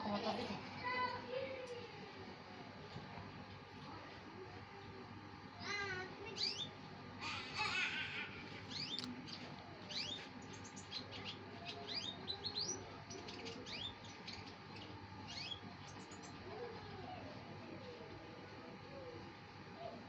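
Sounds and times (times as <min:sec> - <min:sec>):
canary singing: 0:05.6 - 0:17.6.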